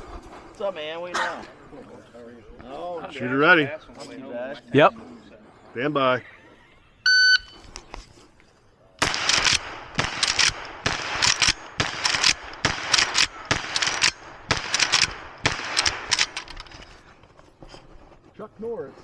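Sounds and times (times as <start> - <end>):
rifle firing rapid shots: 9.0 - 16.5.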